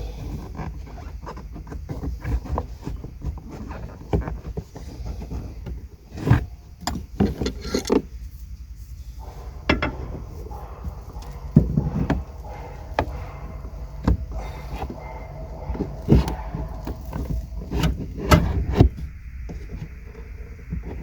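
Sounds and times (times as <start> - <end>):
metal knocking on plastic: 11.2 - 19.0.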